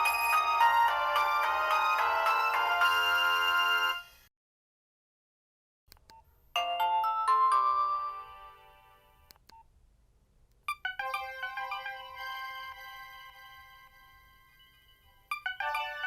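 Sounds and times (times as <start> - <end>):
phone ringtone chimes: 0.0 - 4.0, 6.6 - 9.0, 10.7 - 16.0.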